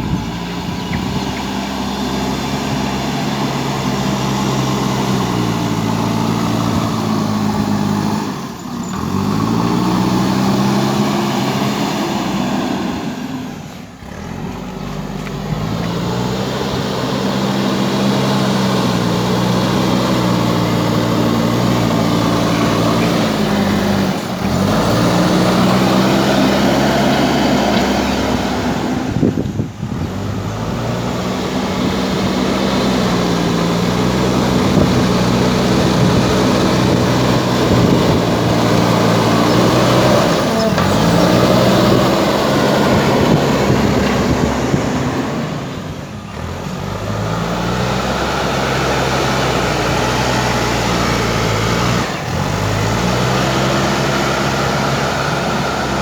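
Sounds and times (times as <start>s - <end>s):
diesel engine under load: 0.0s - 56.0s.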